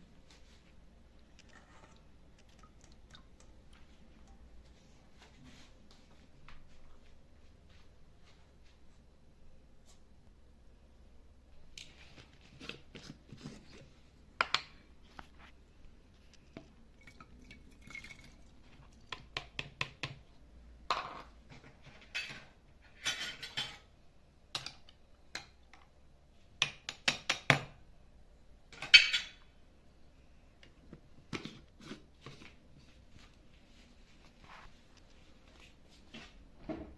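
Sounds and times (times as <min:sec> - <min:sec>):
kitchen utensils clinking: 0:22.0 - 0:23.9, 0:28.8 - 0:29.4.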